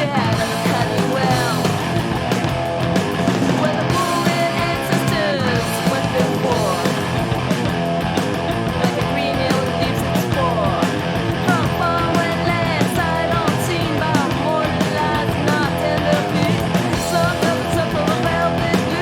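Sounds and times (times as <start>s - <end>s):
punk rock band playing: 0.0s - 19.0s.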